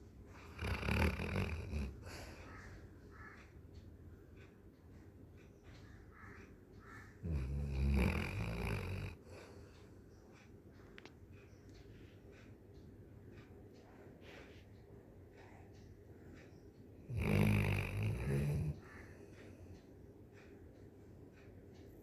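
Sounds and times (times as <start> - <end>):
dog breathing softly: 0.1 - 3.3, 7.2 - 10.6, 13.4 - 16.5
dog snoring: 0.4 - 2.4, 7.2 - 9.5, 17.1 - 18.8.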